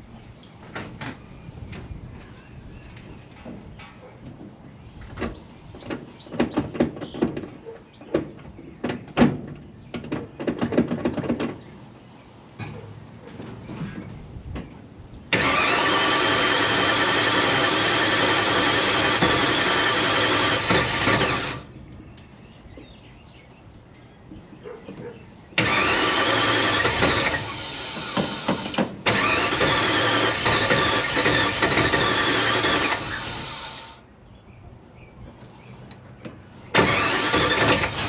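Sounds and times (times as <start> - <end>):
car engine cranking on starter: 15.3 - 21.7, 25.6 - 34.0, 36.8 - 38.0.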